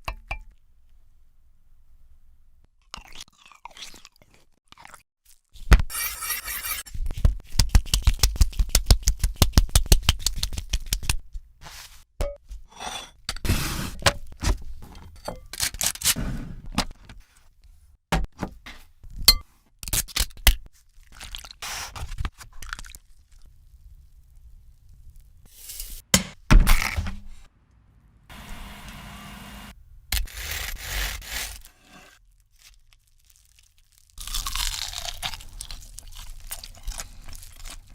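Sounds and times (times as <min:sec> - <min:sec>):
utensils scraping and clinking: 0:05.9 - 0:06.8.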